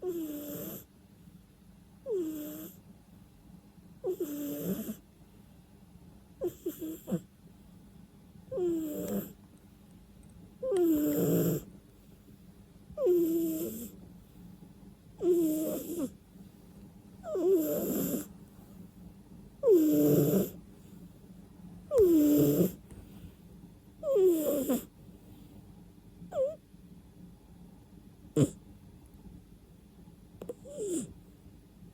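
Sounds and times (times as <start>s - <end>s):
cat snoring with whistle: 0.0s - 0.9s, 2.1s - 2.8s, 4.0s - 5.0s, 6.4s - 7.2s, 8.5s - 9.3s, 10.6s - 11.7s, 13.0s - 13.9s, 15.2s - 16.1s, 17.2s - 18.3s, 19.6s - 20.6s, 21.9s - 22.8s, 24.0s - 24.9s, 26.3s - 26.6s, 28.3s - 28.6s, 30.5s - 31.1s.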